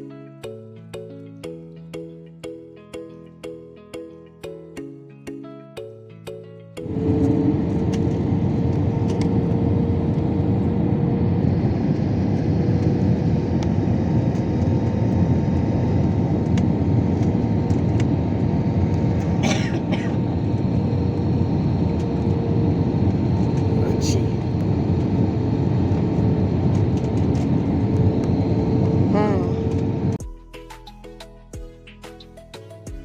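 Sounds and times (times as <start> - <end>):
constant hum: 6.8 - 30.2
jet airliner cabin roar: 6.8 - 30.2.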